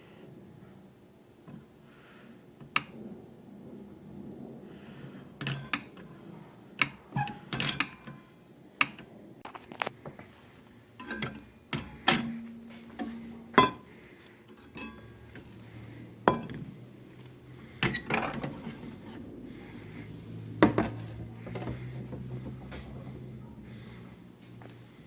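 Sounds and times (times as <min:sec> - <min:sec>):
clinks of small hard parts: 0:11.0 - 0:13.9, 0:14.5 - 0:18.8.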